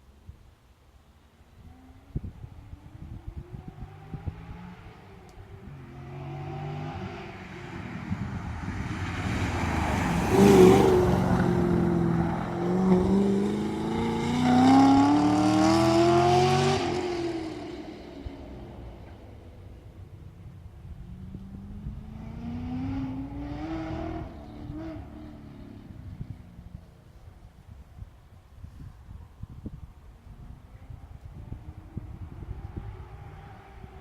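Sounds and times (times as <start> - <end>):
car engine accelerating past: 1.7 - 20.0, 21.0 - 26.5, 30.6 - 34.0.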